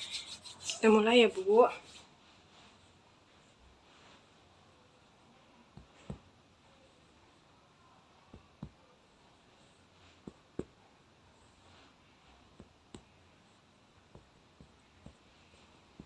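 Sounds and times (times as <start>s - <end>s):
hand patting on back: 8.3s - 8.8s.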